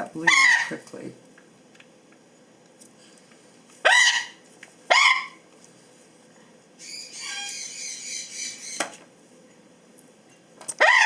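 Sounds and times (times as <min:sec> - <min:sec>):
bird squawking: 0:00.3 - 0:00.8, 0:03.8 - 0:05.4, 0:06.8 - 0:08.9, 0:10.8 - 0:11.0
harsh raspy bird screech: 0:06.8 - 0:08.8.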